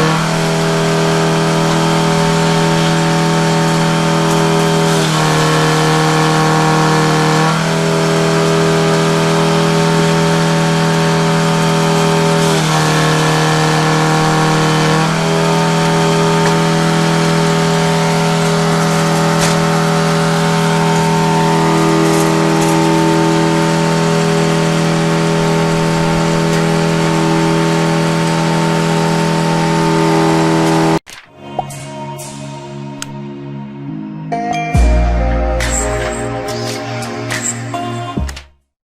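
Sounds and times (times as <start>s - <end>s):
engine running steadily: 0.0s - 31.0s.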